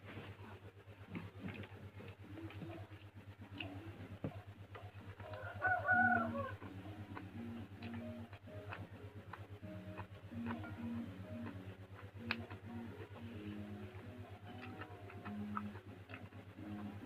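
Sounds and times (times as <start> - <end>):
steady low hum: 0.0 - 17.0
rooster crowing: 5.2 - 6.7.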